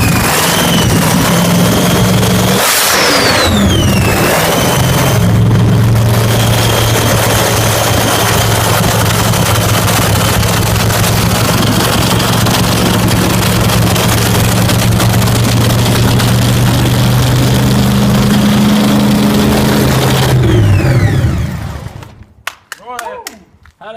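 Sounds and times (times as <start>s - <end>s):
drag racing engine idling: 0.0s - 22.1s.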